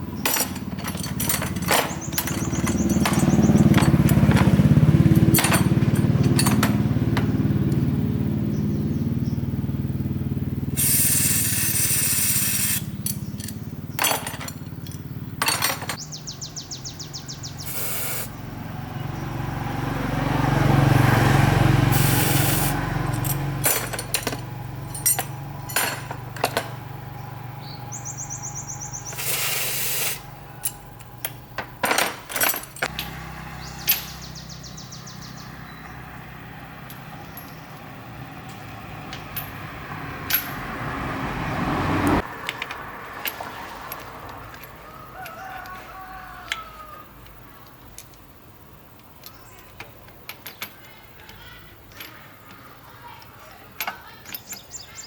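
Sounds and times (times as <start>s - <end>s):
small engine running: 0.0s - 15.3s, 17.6s - 31.2s
metal tool clanks and knocks: 0.1s - 7.5s, 13.0s - 16.0s, 23.1s - 26.9s, 30.6s - 33.2s, 40.3s - 40.6s.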